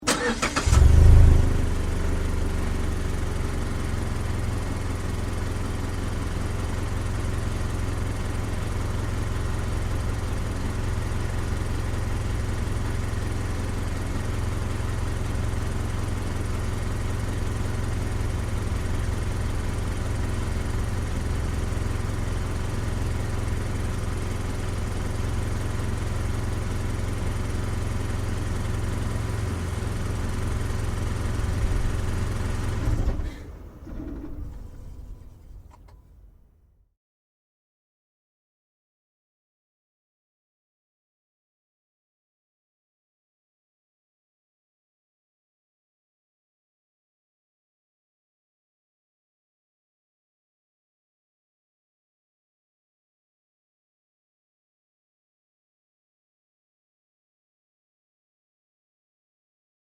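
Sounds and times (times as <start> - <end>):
car engine starting and idling: 0.0 - 36.7.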